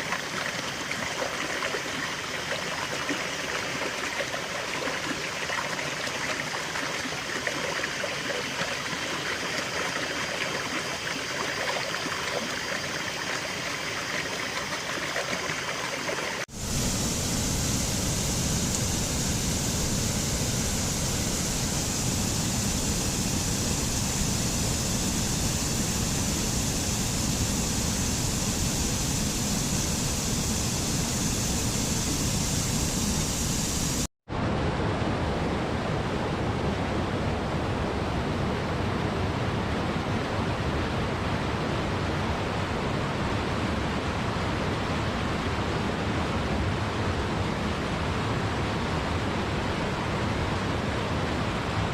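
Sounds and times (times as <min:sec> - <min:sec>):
stream water rushing: 0:00.0 - 0:34.1.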